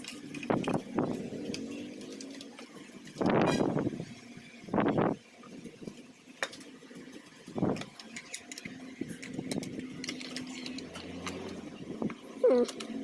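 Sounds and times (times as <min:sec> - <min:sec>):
plastic scraping: 0:05.8 - 0:13.0.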